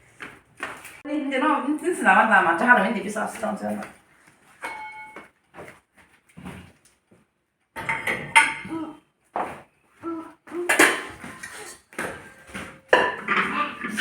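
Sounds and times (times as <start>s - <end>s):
dishes and utensils clattering: 4.6s - 5.3s, 7.8s - 8.7s, 10.7s - 14.0s.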